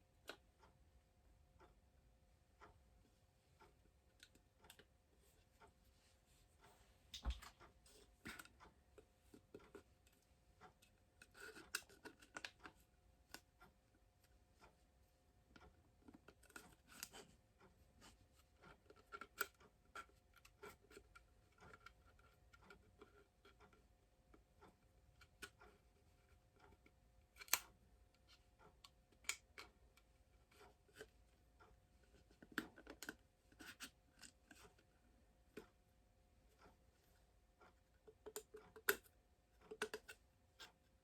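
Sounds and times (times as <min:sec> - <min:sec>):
glowstick clicks and scrapes: 0:06.6 - 0:14.7, 0:24.6 - 0:35.0.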